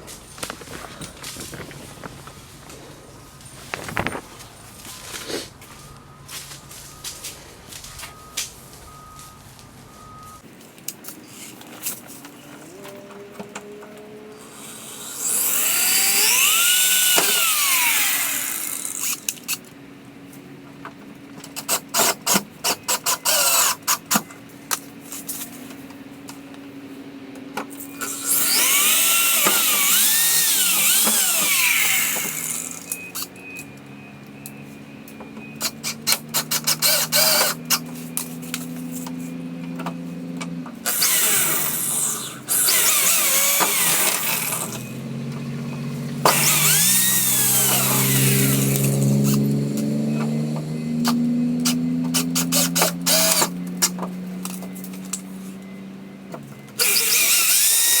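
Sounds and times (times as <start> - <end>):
power drill boring into metal: 14.5 - 19.3, 22.7 - 23.9, 28.0 - 33.3, 35.6 - 37.8, 40.9 - 44.9, 46.3 - 49.4, 51.6 - 53.5, 56.8 - 58.0.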